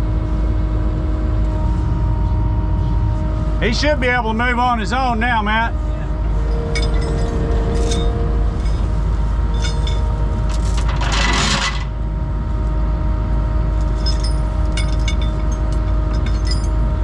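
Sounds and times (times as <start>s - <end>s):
engine running: 0.0s - 17.0s
light metallic clinks: 6.4s - 8.9s, 9.5s - 10.9s, 13.8s - 16.8s.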